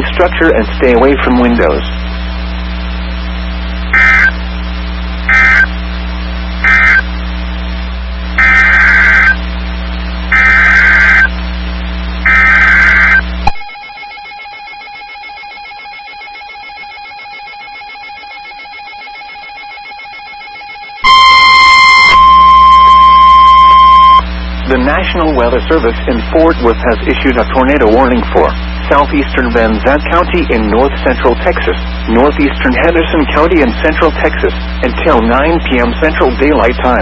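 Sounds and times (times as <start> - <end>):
buzzy digital data bursts: 0.0 - 9.5, 10.1 - 13.4, 21.1 - 37.0
low hum: 0.0 - 37.0
loud warning alarm tone: 3.9 - 4.4, 5.3 - 5.8, 6.6 - 7.1, 8.4 - 9.4, 10.3 - 11.3, 12.2 - 24.3.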